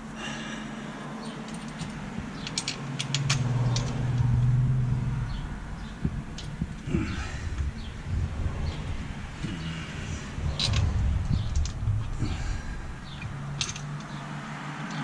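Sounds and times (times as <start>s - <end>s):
steady low hum: 0.0s - 14.5s
sharp metallic clicks: 1.4s - 4.6s.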